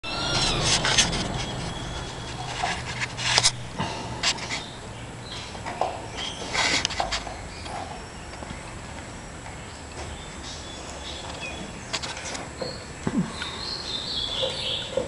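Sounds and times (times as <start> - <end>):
scratching and scraping: 0.0 - 7.8
low steady hum: 0.0 - 12.0.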